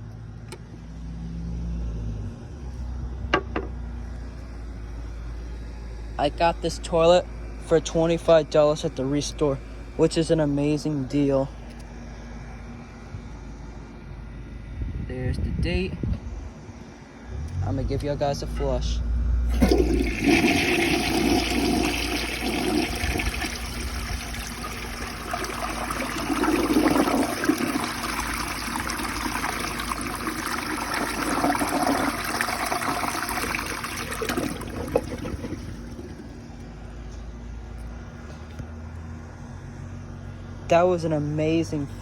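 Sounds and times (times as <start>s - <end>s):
running water: 19.5s - 36.3s
toilet flushing: 19.5s - 36.4s.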